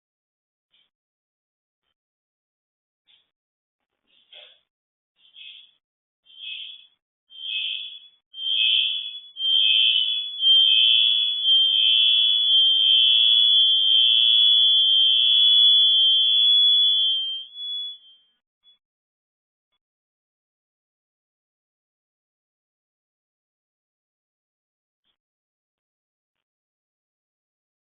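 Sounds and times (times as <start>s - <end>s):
high-pitched electronic alarm beeps: 5.2s - 18.8s.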